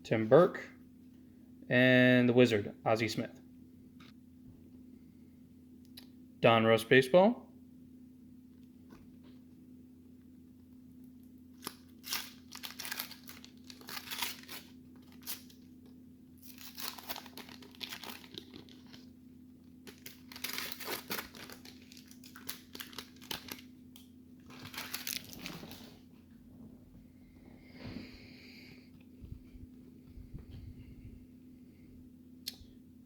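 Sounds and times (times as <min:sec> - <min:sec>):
faint steady hum: 0:00.0 - 0:33.0
card pack wrapper tearing: 0:11.6 - 0:15.7, 0:16.4 - 0:19.1, 0:19.8 - 0:23.7, 0:24.5 - 0:25.8
wrapper crinkling: 0:11.6 - 0:19.2, 0:19.8 - 0:23.8, 0:24.4 - 0:26.0.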